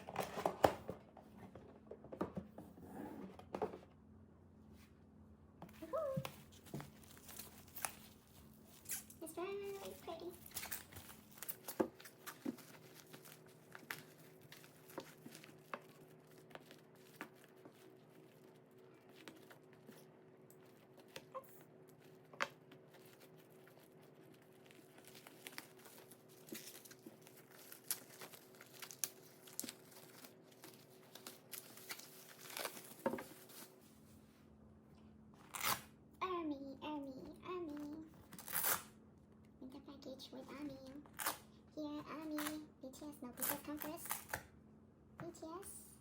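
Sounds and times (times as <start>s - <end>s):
plastic and paper crinkling: 5.8s - 34.0s.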